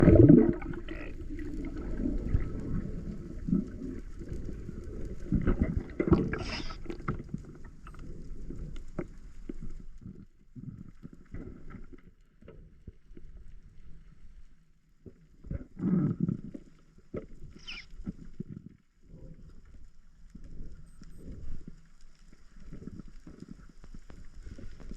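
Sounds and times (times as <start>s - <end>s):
water rushing: 0.0s - 3.0s
water sloshing and gurgling: 0.0s - 13.9s.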